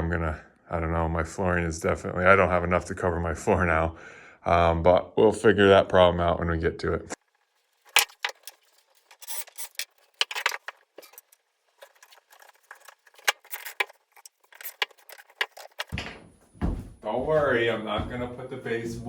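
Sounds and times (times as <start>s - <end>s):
wooden pieces knocking and scraping: 7.8s - 16.3s.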